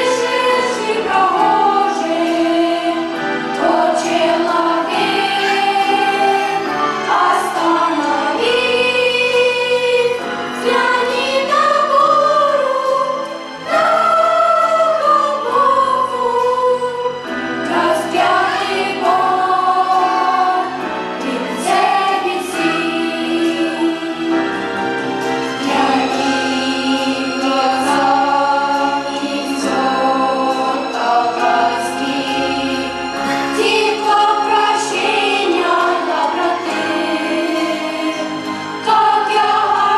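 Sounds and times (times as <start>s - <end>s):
choir singing a hymn: 0.0s - 39.9s.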